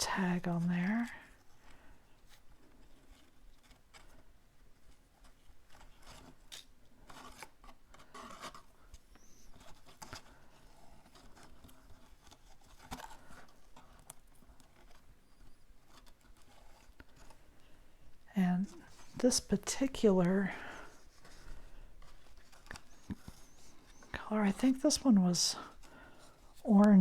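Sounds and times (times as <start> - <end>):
rustling of cardstock: 1.0 - 27.0.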